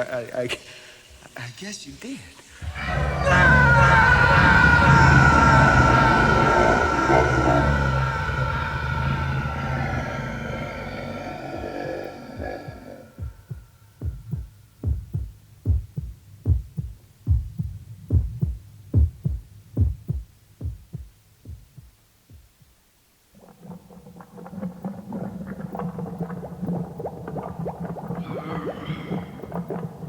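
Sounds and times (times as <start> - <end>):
heartbeat thumps: 12.4 - 22.9.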